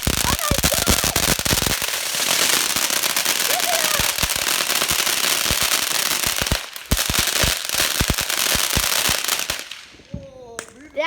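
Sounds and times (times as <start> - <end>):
fireworks crackling and banging: 0.0 - 11.0.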